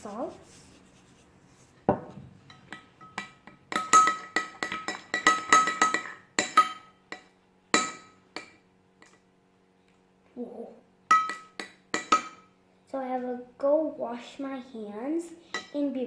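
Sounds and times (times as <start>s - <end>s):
spoon clinking against bowl: 2.5s - 9.2s, 11.1s - 12.4s.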